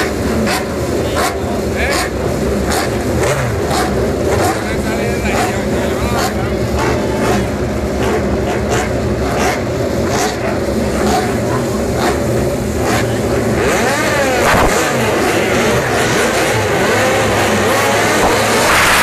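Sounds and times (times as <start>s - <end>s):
racing motorcycles accelerating past: 13.6s - 19.0s.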